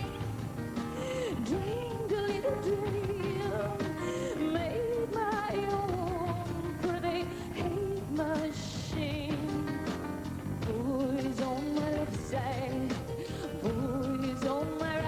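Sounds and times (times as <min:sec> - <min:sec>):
pop-rock band playing: 0:00.0 - 0:15.0
woman singing with vibrato: 0:00.0 - 0:15.0.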